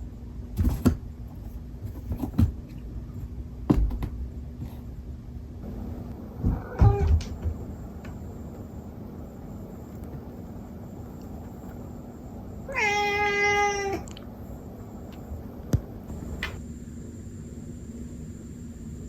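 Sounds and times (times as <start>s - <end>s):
cat meowing: 12.7s - 14.1s.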